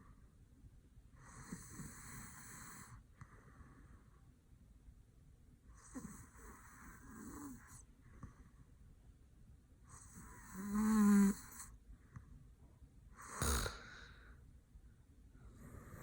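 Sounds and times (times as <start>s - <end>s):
man snoring: 10.2s - 11.6s, 13.2s - 14.1s.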